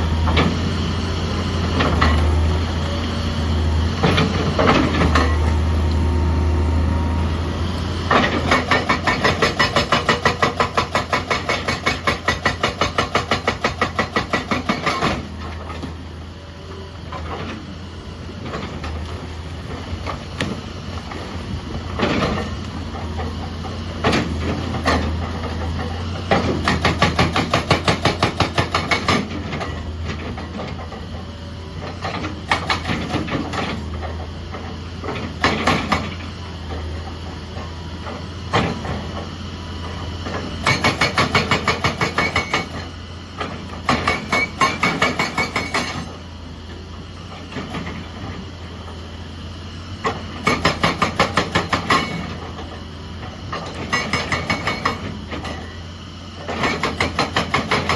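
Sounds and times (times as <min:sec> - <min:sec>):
diesel engine hum: 0:00.0 - 0:57.9
hydraulic breaker hammer striking: 0:08.2 - 0:15.3, 0:26.4 - 0:29.4, 0:40.6 - 0:42.8, 0:43.8 - 0:46.2, 0:50.4 - 0:52.4, 0:56.6 - 0:57.9.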